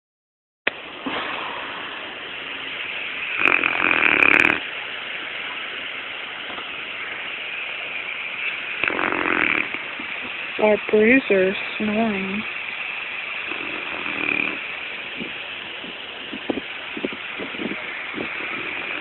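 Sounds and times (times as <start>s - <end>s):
loud snoring: 3.3s - 4.6s, 8.8s - 9.9s, 13.5s - 14.7s, 18.3s - 19.0s.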